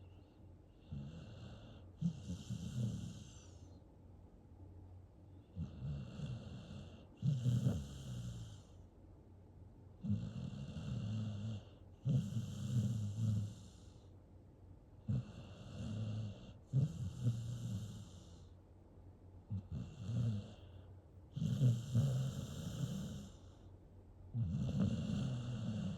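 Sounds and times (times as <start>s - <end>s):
puppy snoring: 0.0s - 3.8s, 5.4s - 8.8s, 10.0s - 14.1s, 15.0s - 18.6s, 19.5s - 23.7s, 24.3s - 25.9s.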